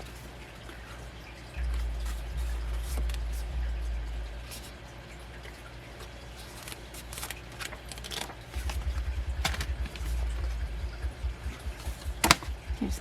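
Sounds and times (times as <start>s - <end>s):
paper and plastic rustling: 6.0s - 10.2s
low bumping handling noise: 8.6s - 13.0s.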